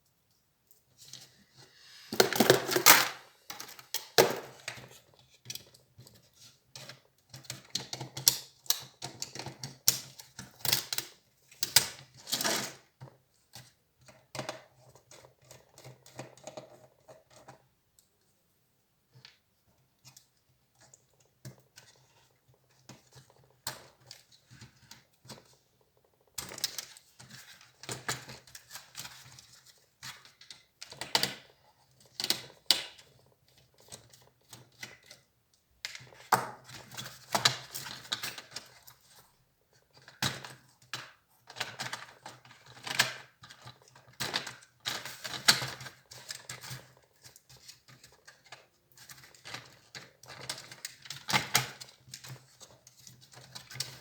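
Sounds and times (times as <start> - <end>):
laptop parts and tools clicking: 2.1 - 4.8.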